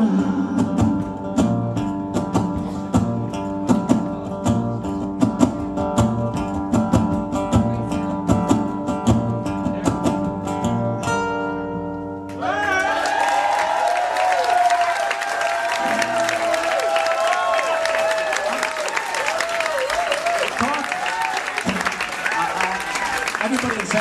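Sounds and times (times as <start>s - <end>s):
acoustic guitar strumming: 0.0s - 12.4s
crowd cheering and whooping: 12.3s - 23.5s.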